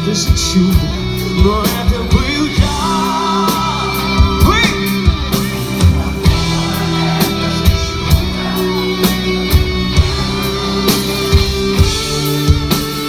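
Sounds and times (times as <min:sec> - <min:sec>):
bass guitar: 0:00.0 - 0:13.0
sustained electric guitar: 0:00.0 - 0:13.0
drum strokes: 0:00.3 - 0:13.0.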